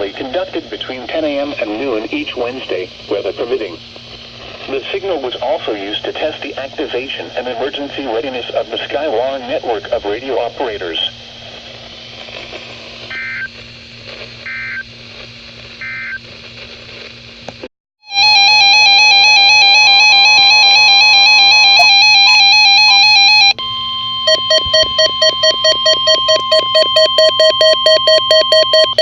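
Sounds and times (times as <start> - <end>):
radio hiss: 0.0 - 17.2
rapid pulsing beeps: 18.2 - 29.0
two-tone data bursts: 18.2 - 29.0
distorted warbling data tones: 21.0 - 29.0.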